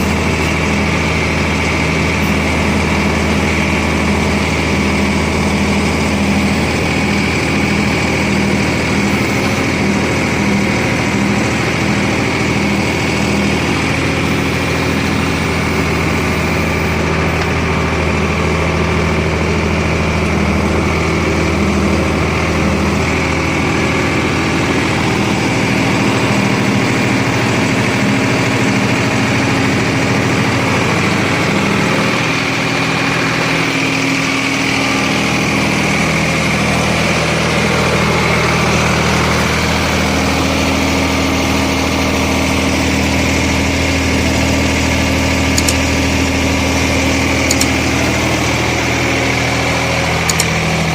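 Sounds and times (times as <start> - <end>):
tractor diesel engine running: 0.0 - 50.9.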